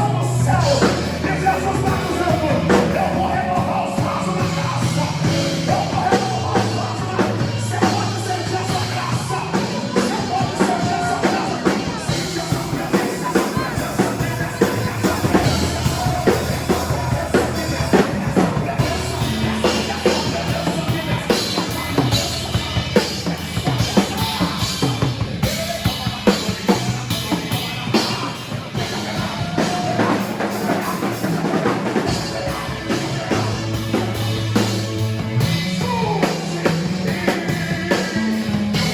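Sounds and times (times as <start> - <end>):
live band playing: 0.0 - 38.9.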